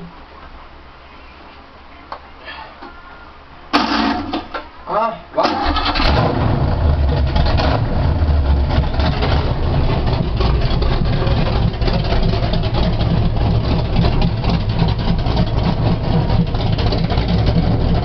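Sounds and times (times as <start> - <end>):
engine idling with deep rumble: 5.6 - 18.0.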